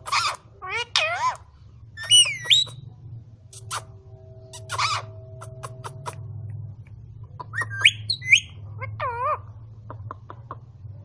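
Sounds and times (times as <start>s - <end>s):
parakeet wavering call: 0.0s - 2.8s, 4.5s - 6.2s, 7.4s - 9.5s
parakeet sharp rising whistles: 2.0s - 2.8s, 7.6s - 8.5s.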